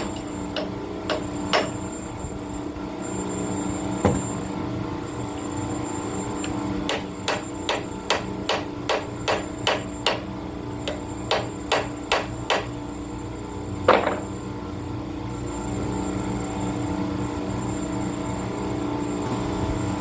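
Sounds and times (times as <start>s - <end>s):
hand hammer striking: 0.0s - 1.7s, 6.9s - 10.2s, 10.9s - 12.7s
steady hum: 0.0s - 20.0s.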